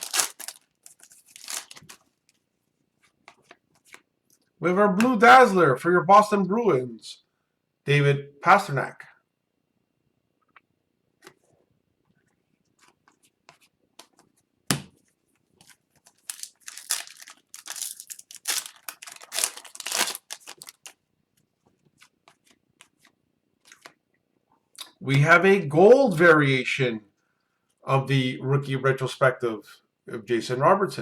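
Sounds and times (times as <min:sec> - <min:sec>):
card pack wrapper tearing: 0:00.0 - 0:02.0, 0:16.1 - 0:21.0
cards clicking and tapping: 0:22.0 - 0:24.0.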